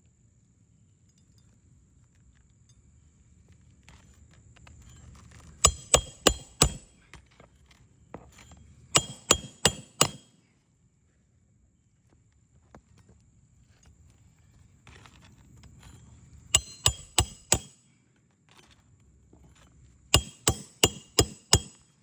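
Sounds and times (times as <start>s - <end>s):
hammer striking roofing nails: 5.6s - 7.0s, 8.9s - 10.3s, 16.6s - 17.8s, 20.2s - 21.9s.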